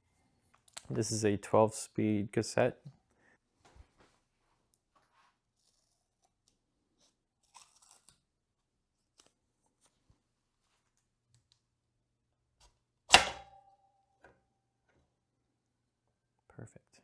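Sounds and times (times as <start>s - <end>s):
metal part clanking on hard surface: 13.1s - 13.6s.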